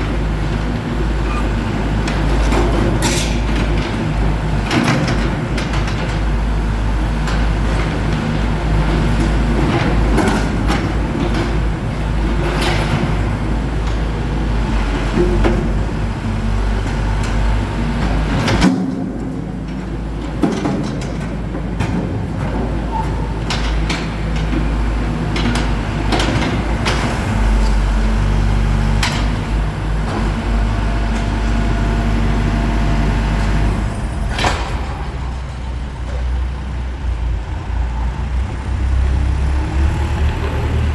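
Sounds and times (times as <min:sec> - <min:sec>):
backhoe diesel engine running: 0:00.0 - 0:40.9
sharp bang: 0:33.9 - 0:36.5.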